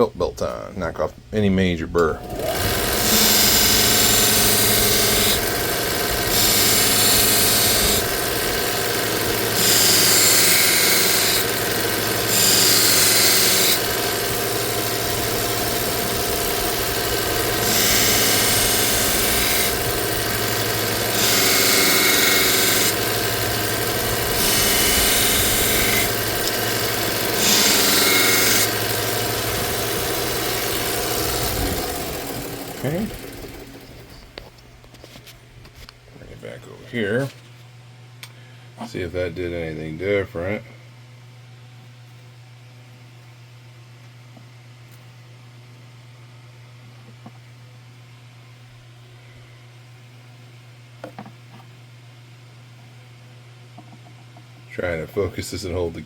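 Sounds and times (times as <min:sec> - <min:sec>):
belt sander motor humming: 0:02.1 - 0:34.6.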